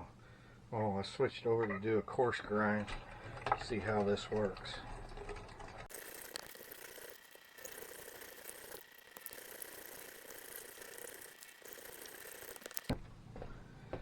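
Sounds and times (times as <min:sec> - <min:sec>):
grinder clicks: 0:05.2 - 0:13.0
meat grinder running: 0:05.8 - 0:13.0.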